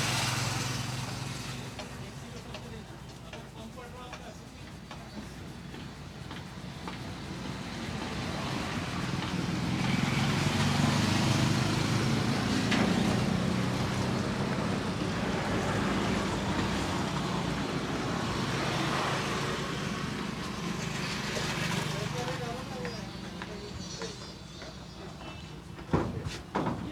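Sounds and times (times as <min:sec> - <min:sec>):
vehicle engine passing: 0:00.0 - 0:01.9, 0:08.0 - 0:23.7.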